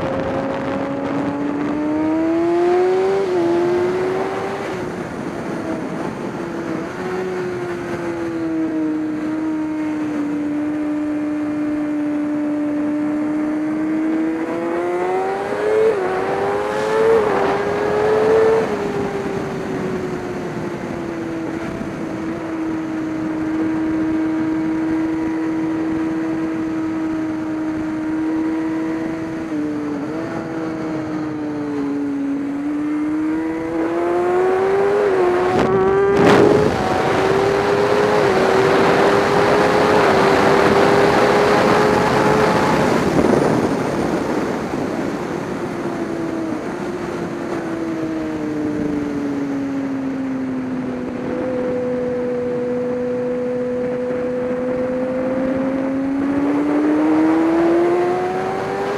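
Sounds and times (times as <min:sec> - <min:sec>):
racing engine running: 0:13.1 - 0:43.9.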